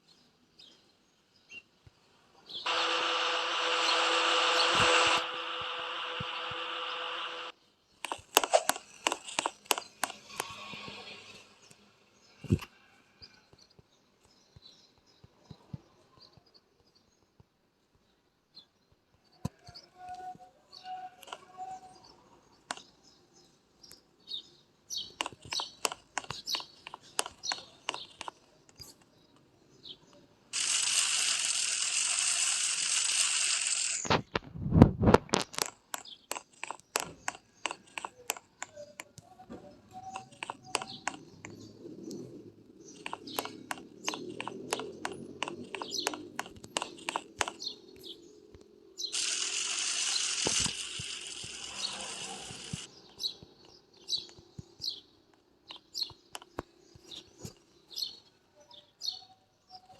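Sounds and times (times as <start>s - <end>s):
steady hissing: 2.7s - 11.0s, 30.6s - 34.2s, 49.1s - 52.9s
small clicks and taps: 8.0s - 11.0s, 25.2s - 29.5s, 34.1s - 41.6s, 43.0s - 48.7s.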